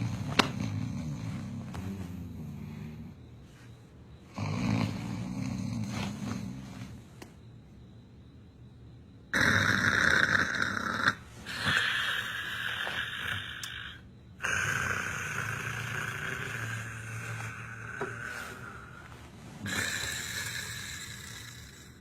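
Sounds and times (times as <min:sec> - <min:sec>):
loud snoring: 0:00.0 - 0:03.2, 0:04.3 - 0:07.0, 0:09.3 - 0:22.0.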